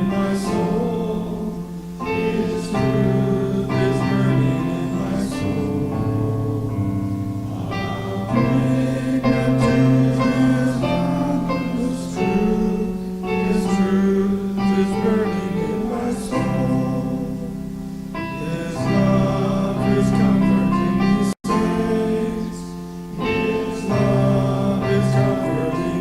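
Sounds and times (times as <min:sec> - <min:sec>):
congregation singing a hymn: 0:00.0 - 0:26.0
piano accompaniment: 0:00.0 - 0:26.0.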